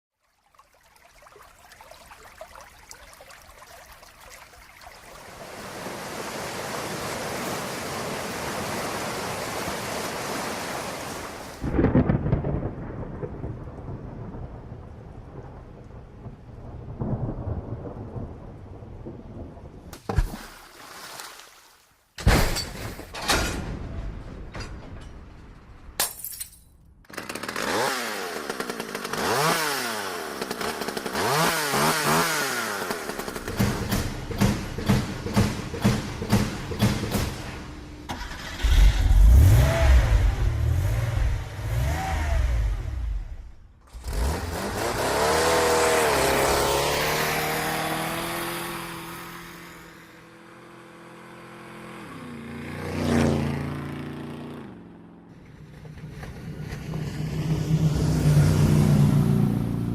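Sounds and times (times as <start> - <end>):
motor engines revving past: 38.1 - 59.9.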